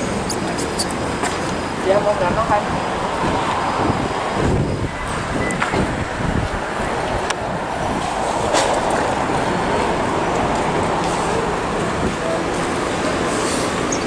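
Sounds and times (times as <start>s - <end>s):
vehicles passing on road: 0.0s - 14.0s.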